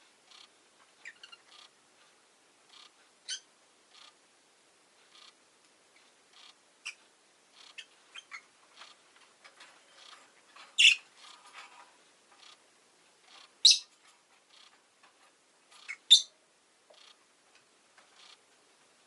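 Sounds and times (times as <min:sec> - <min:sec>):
lovebird chirping: 0:00.3 - 0:01.7, 0:02.7 - 0:04.2, 0:06.3 - 0:09.0, 0:09.9 - 0:11.4, 0:13.3 - 0:14.7, 0:15.7 - 0:16.4.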